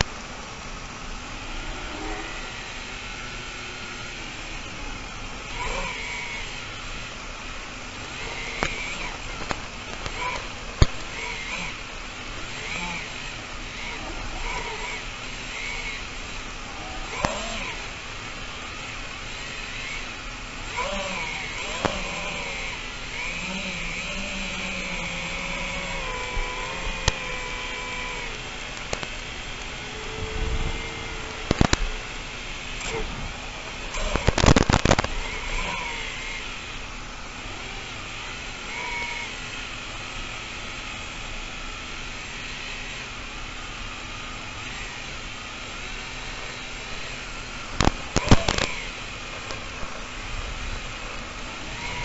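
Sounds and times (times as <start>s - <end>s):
drone motors whining: 0.0s - 52.0s
sharp clicks: 8.0s - 11.8s, 20.7s - 22.2s, 26.0s - 36.5s, 47.8s - 49.9s.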